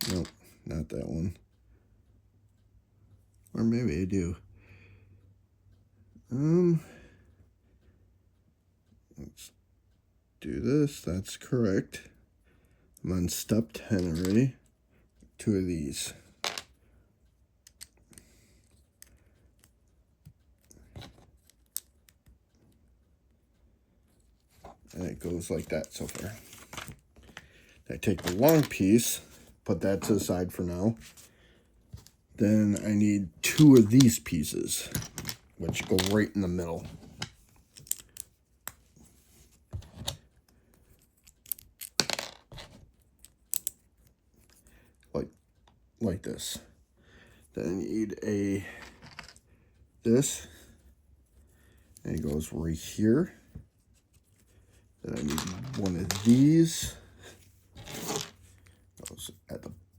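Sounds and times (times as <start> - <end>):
plastic pieces clicking and rattling: 32.8 - 38.8, 41.2 - 43.8, 55.2 - 56.8
plastic bricks clicking together: 37.2 - 38.8.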